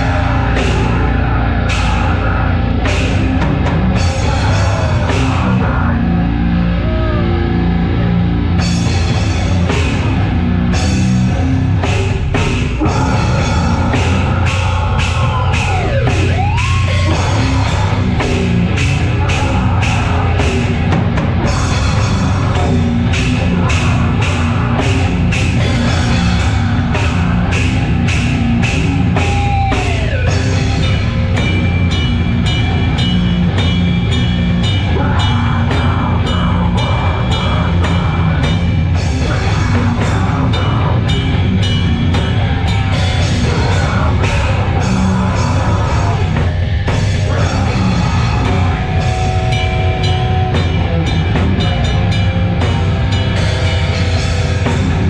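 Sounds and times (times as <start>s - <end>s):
bass guitar: 0.0s - 55.0s
distorted guitar: 0.0s - 55.0s
drum kit cymbal and snare hits: 8.6s - 34.8s.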